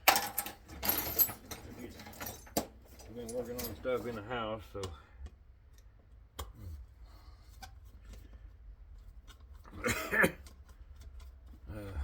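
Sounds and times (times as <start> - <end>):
small metal tools clicking and rattling: 0.0 - 3.9.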